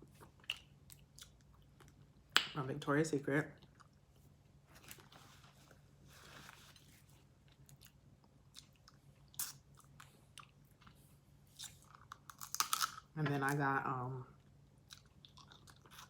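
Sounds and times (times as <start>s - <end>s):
faint steady hum: 0.0s - 16.0s
person chewing: 0.1s - 2.2s, 7.4s - 13.0s, 14.8s - 16.0s
small crunches: 11.6s - 13.0s.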